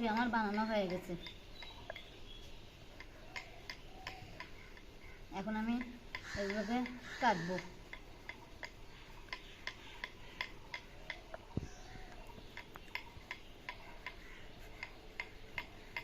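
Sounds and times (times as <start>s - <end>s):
light even ticking: 0.0s - 16.0s.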